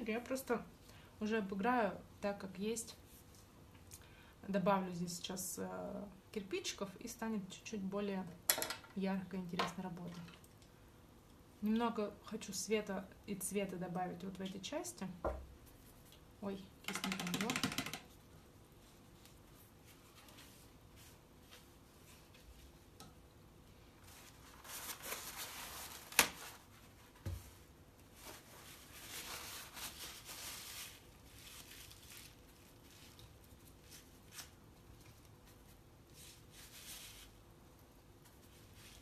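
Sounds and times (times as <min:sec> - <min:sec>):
faint rustling and scraping: 0:18.1 - 0:23.0, 0:23.6 - 0:37.4.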